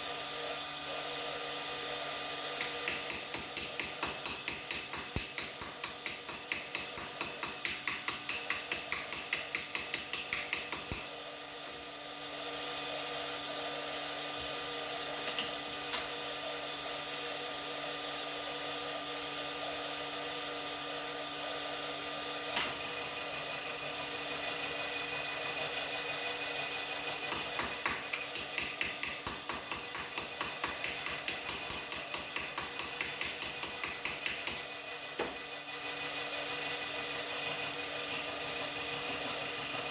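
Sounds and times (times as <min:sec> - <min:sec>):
hand tool scraping strokes: 0:02.6 - 0:11.1, 0:27.0 - 0:35.6.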